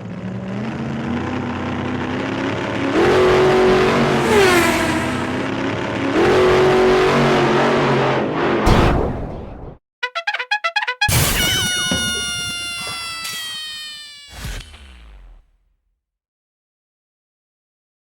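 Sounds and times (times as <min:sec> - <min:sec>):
car engine revving: 0:00.0 - 0:08.6.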